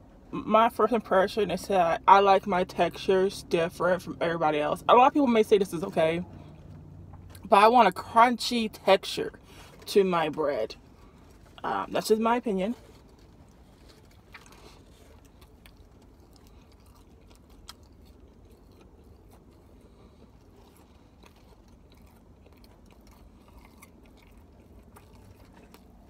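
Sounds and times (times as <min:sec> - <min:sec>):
faint chewing: 0:09.3 - 0:11.6, 0:12.6 - 0:26.0.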